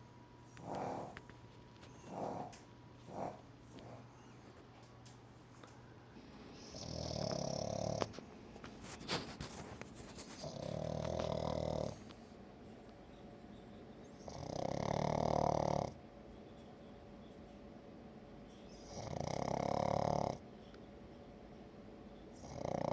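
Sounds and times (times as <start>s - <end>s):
dog snoring: 0.5s - 4.4s, 6.6s - 8.2s, 10.2s - 12.1s, 14.2s - 16.0s, 18.7s - 20.4s, 22.4s - 22.9s.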